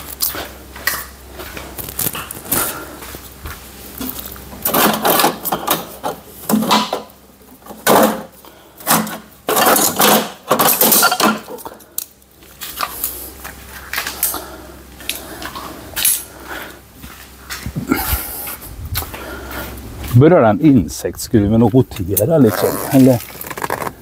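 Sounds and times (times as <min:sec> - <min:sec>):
metal tools clinking and scraping: 0:08.8 - 0:12.0.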